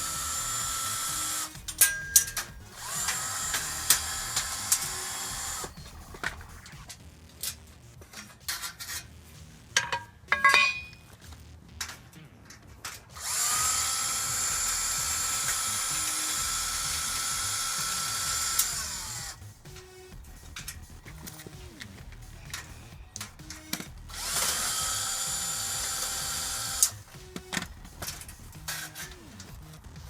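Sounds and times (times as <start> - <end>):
drill motor spinning: 0.0 - 6.8, 13.2 - 29.5
metal clicks and clanks: 9.8 - 11.0.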